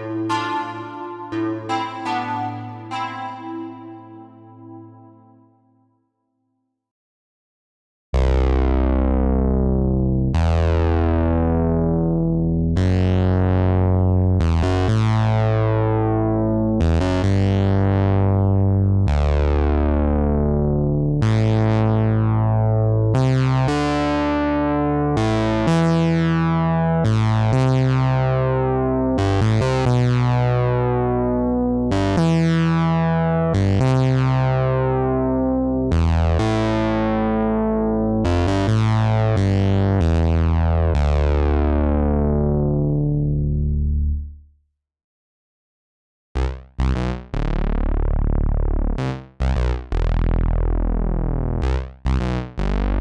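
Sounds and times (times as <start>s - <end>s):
strong synth bass: 0.0s - 5.4s, 46.4s - 53.0s
synthesizer notes: 0.0s - 5.7s.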